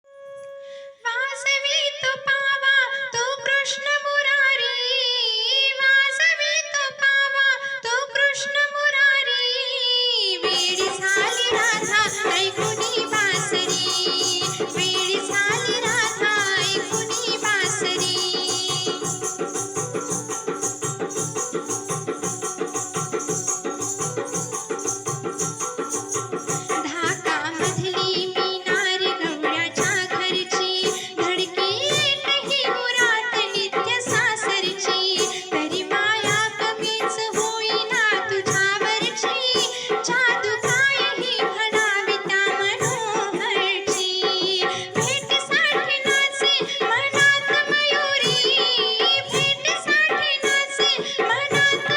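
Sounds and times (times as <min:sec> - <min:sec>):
ornamented melody line: 0:10.6 - 0:28.6
band with fast percussion: 0:10.6 - 0:51.9.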